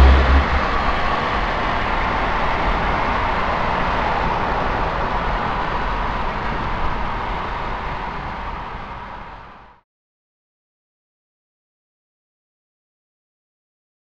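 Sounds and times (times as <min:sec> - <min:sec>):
vehicle road and wind noise: 0:00.0 - 0:09.8.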